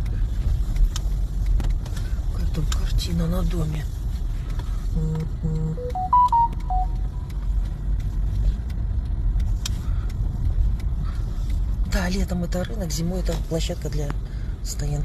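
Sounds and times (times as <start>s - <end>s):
car engine and tyres rumbling: 0.0s - 15.0s
electronic beeping tones: 5.1s - 7.2s.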